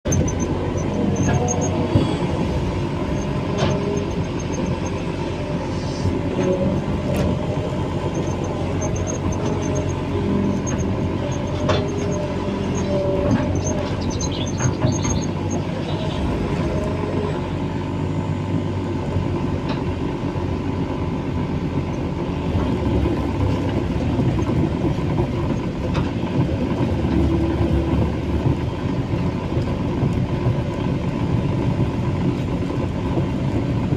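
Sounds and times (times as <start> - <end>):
heavy machine diesel engine: 0.0 - 33.9
high metallic squeaks and clicks: 0.1 - 2.3, 3.0 - 17.0.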